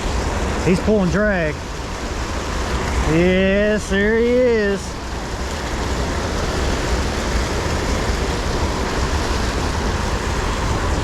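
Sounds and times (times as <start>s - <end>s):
fast-flowing creek rushing: 0.0s - 11.0s.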